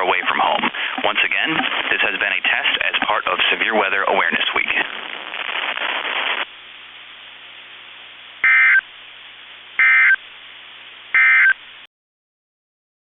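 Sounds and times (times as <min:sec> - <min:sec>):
radio hiss: 0:00.0 - 0:11.9
digital data tone bursts: 0:08.4 - 0:08.8, 0:09.8 - 0:10.2, 0:11.2 - 0:11.6.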